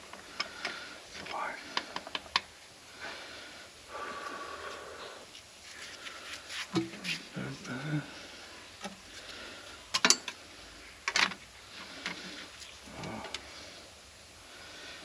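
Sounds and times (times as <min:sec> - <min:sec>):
plastic parts clicking and knocking: 0:11.1 - 0:11.4.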